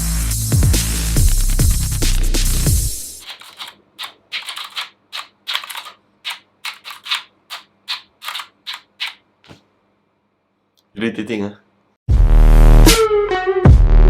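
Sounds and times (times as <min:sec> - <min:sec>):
computer keyboard typing: 0:03.2 - 0:09.2.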